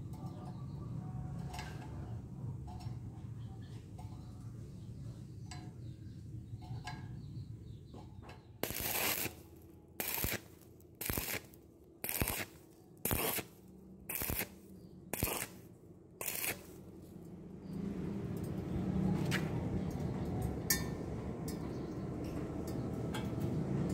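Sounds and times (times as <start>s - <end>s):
stick welding arc crackling: 8.6s - 16.9s.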